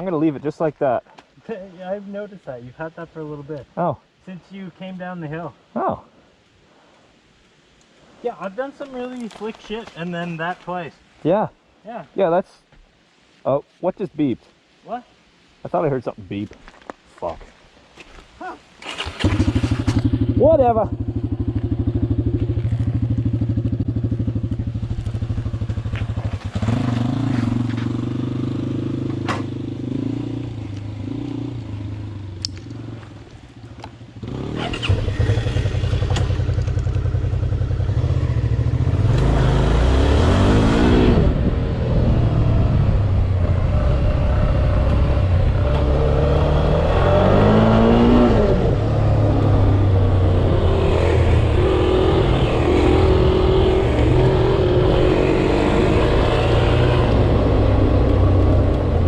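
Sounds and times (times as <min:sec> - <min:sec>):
motorcycle engine revving: 0:18.8 - 0:33.2, 0:34.2 - 0:59.0.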